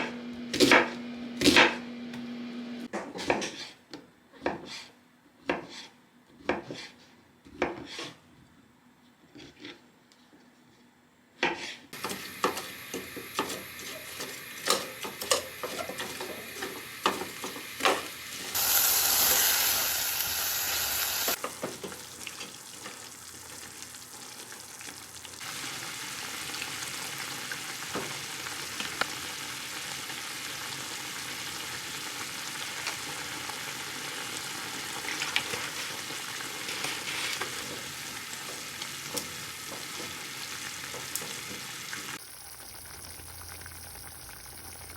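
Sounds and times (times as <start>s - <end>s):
utensils clinking in a pan: 12.0s - 18.1s
food frying sizzle: 12.0s - 44.9s
loud hiss in a pan: 12.0s - 44.9s.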